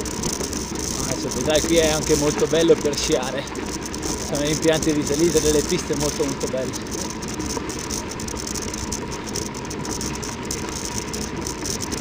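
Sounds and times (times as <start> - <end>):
bike rattling: 0.0 - 12.0
tyres rumbling on loose ground: 0.0 - 12.0.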